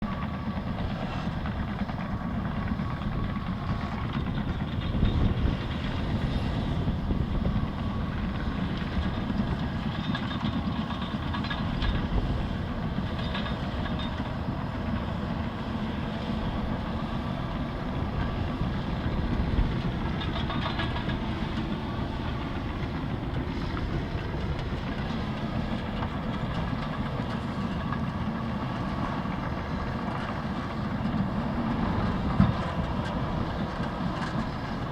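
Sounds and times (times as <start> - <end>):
bulldozer diesel rumble: 0.0 - 34.9
steel tracks clanking: 3.7 - 34.9.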